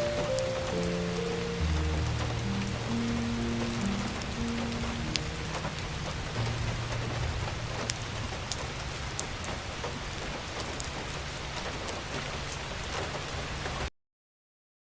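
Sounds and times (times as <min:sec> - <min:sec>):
wood fire crackling: 0:00.0 - 0:13.2.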